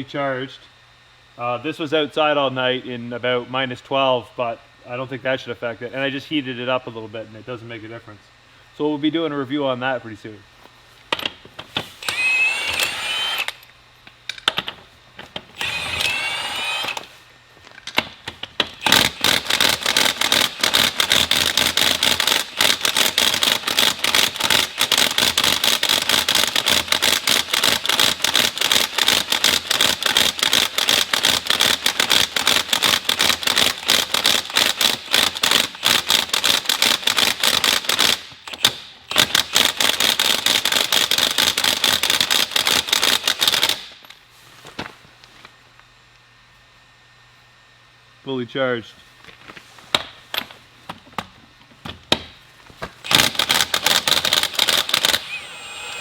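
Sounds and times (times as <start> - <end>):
impact wrench hammering: 11.1 - 13.7, 14.3 - 17.1, 17.9 - 44.0, 53.0 - 56.0.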